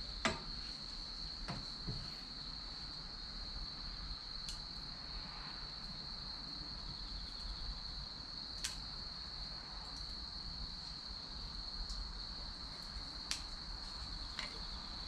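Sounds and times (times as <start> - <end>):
crickets trilling: 0.0 - 15.0
firewood popping in bonfire: 8.4 - 9.0, 11.8 - 15.0.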